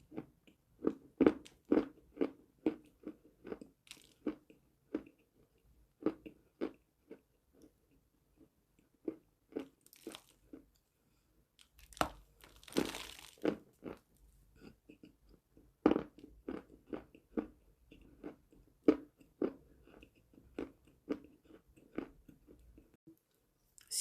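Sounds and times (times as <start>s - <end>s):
person crunching chalk: 11.7s - 13.6s.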